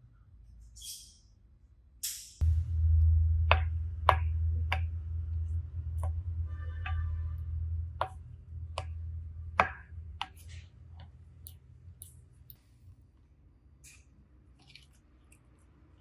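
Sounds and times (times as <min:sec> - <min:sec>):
low hum: 0:02.4 - 0:13.0.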